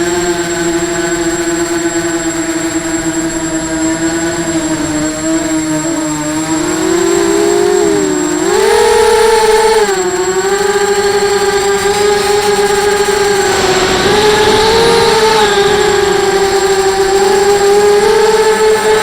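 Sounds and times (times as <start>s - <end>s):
quadcopter motors whining: 0.0s - 19.0s.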